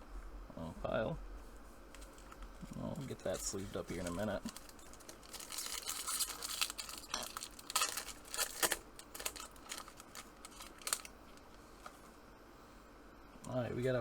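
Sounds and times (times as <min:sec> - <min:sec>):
foil wrapper tearing and crinkling: 0:02.0 - 0:12.1.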